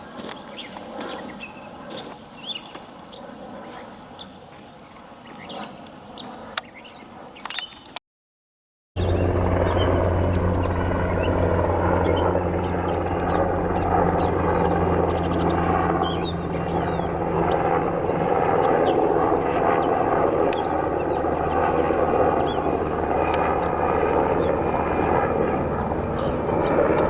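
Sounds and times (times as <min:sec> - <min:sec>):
helicopter flying overhead: 0:03.1 - 0:04.1, 0:09.0 - 0:27.0.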